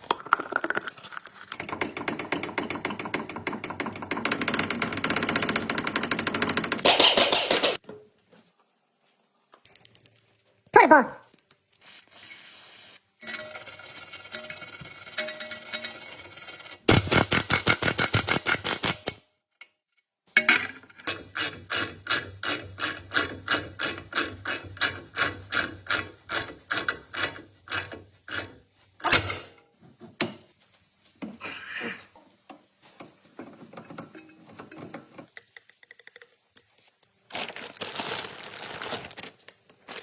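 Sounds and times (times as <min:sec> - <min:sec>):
hand tools working metal: 0:13.2 - 0:19.1.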